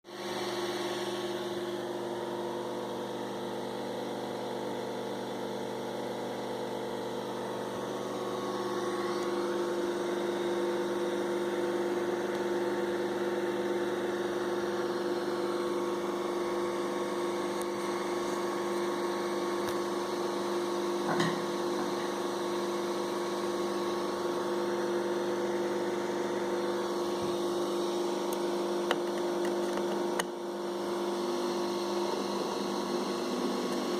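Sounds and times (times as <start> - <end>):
motor vibrating and stuttering: 7.2 - 20.4, 21.2 - 33.9.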